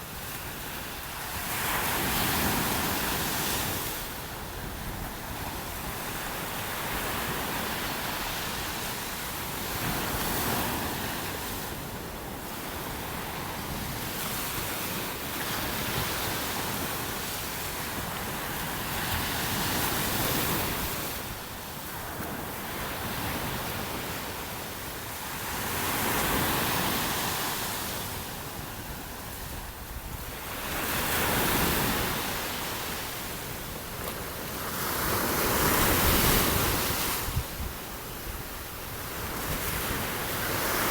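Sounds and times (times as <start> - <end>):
wind on microphone: 26.0 - 40.9.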